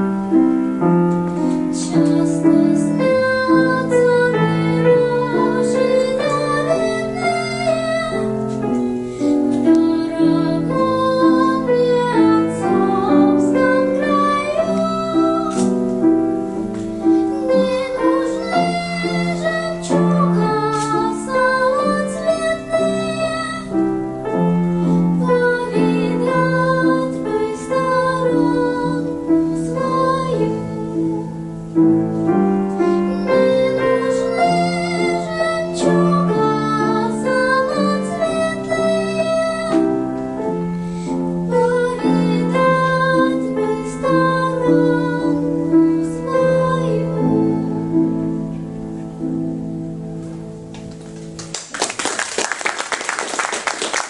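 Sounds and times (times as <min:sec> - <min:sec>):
piano accompaniment: 0:00.0 - 0:54.0
girl singing: 0:00.8 - 0:48.6.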